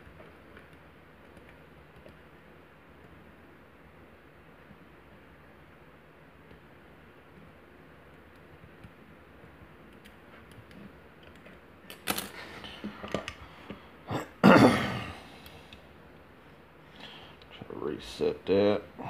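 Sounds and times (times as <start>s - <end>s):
loud cough-like burst: 14.1s - 15.2s.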